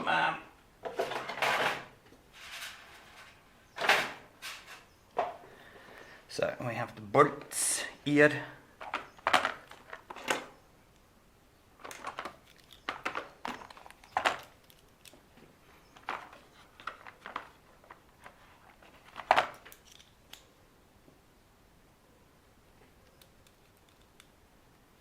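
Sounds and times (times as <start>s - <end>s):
tools clicking and rattling: 11.8s - 15.3s, 15.9s - 20.5s.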